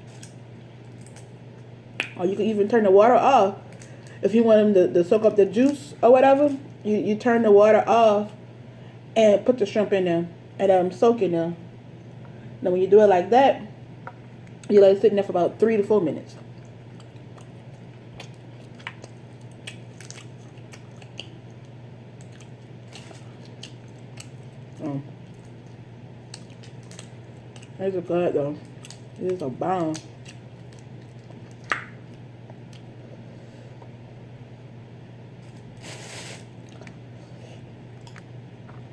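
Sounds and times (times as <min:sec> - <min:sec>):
steady low hum: 0:00.0 - 0:38.9
hiss-like crackle: 0:35.8 - 0:36.5.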